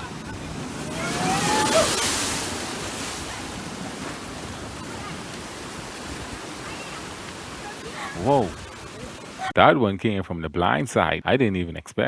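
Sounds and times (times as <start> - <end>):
water breaking: 0.0 - 9.5
wind rushing: 0.0 - 9.5.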